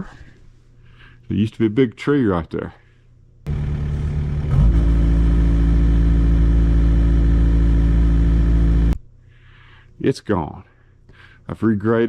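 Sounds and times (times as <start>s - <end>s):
engine running: 3.5s - 9.0s.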